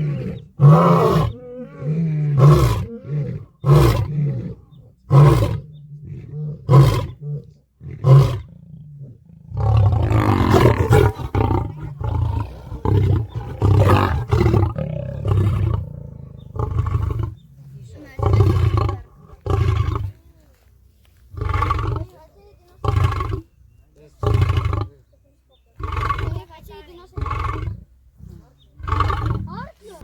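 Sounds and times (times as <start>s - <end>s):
lion roaring: 0.0s - 20.1s.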